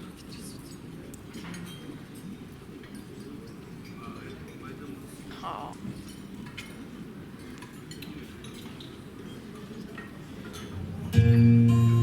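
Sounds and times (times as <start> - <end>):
low background murmur: 0.0 - 11.4
music with held low drone note: 11.1 - 12.0.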